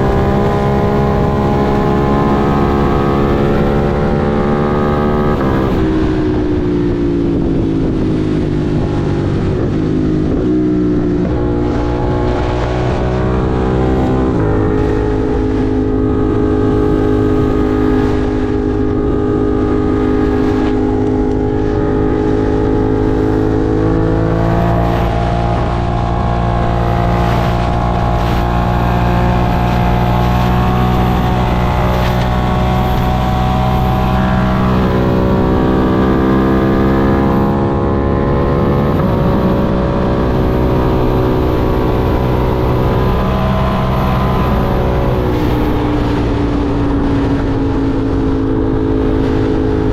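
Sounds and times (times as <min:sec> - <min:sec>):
motorcycle engine droning: 0:00.0 - 0:49.9.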